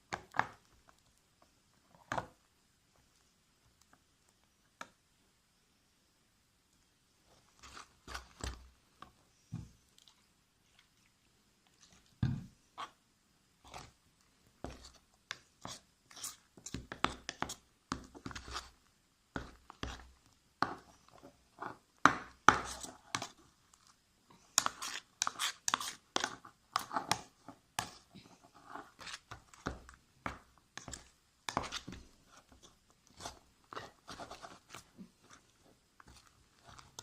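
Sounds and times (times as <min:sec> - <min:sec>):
sticky slime squishing: 0:19.4 - 0:37.0.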